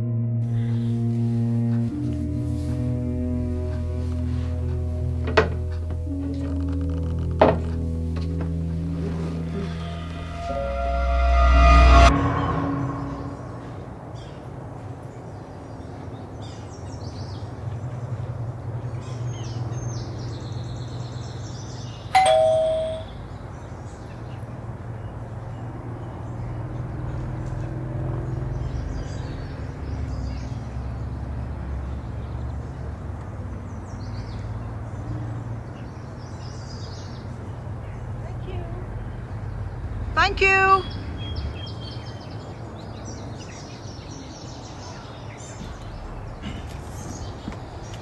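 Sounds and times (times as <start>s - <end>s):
low hum: 0.0s - 14.4s
doorbell ding-dong chime: 22.2s - 23.2s.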